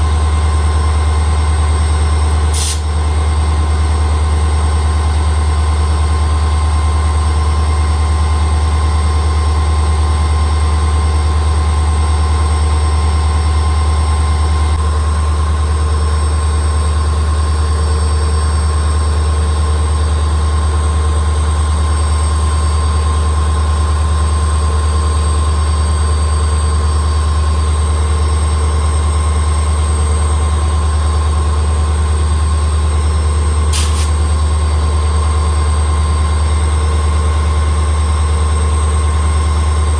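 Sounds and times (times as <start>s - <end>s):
diesel locomotive engine humming: 0.0s - 39.9s
high engine whine: 11.4s - 39.9s
short click: 33.7s - 34.3s.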